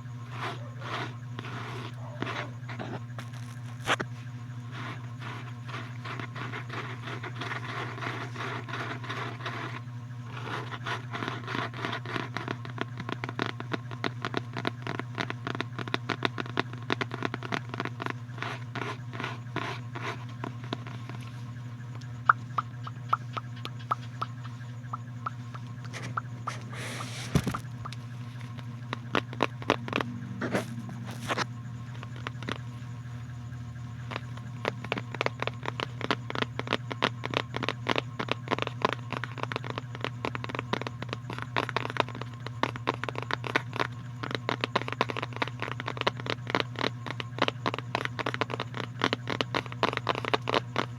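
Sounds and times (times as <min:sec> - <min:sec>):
close scratching: 0:00.0 - 0:50.9
steady low hum: 0:00.0 - 0:50.9
sharp taps and clicks: 0:10.8 - 0:32.9, 0:34.0 - 0:50.9
rustling: 0:18.6 - 0:33.3.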